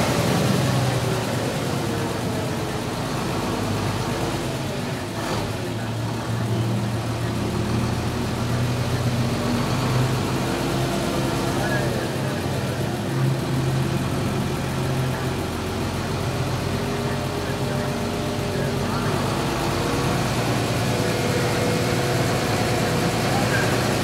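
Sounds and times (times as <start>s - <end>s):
vehicle engines running at low speed: 0.0s - 24.0s.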